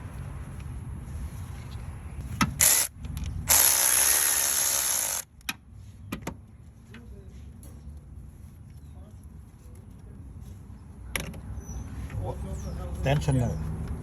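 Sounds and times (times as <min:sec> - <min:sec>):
power tool running: 0:02.6 - 0:02.9, 0:03.5 - 0:05.3.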